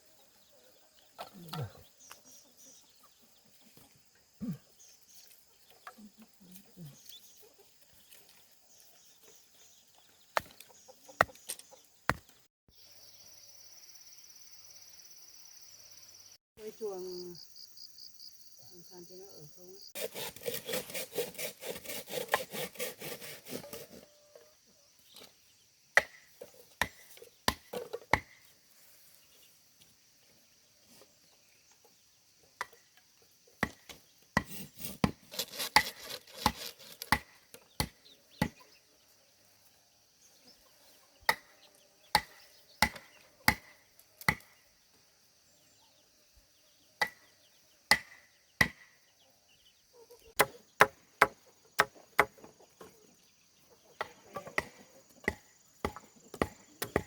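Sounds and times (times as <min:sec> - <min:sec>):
rasping sawing scrape: 0:20.0 - 0:24.1, 0:34.4 - 0:37.2.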